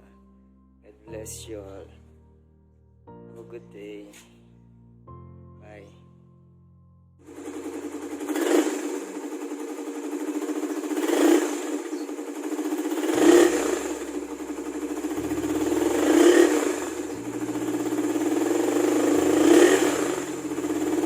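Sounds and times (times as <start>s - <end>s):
motorcycle engine revving: 7.3s - 21.0s.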